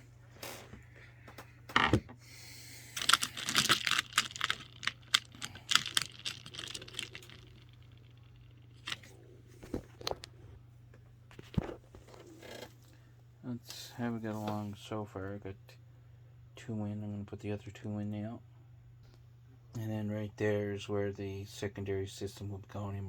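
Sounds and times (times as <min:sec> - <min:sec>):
small sharp clicks and rattles: 0:03.0 - 0:09.1.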